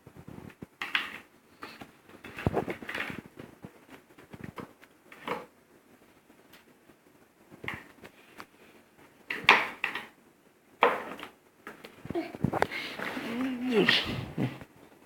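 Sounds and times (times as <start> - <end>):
small hard parts clicking and tapping: 0.5 - 3.2, 9.3 - 10.2.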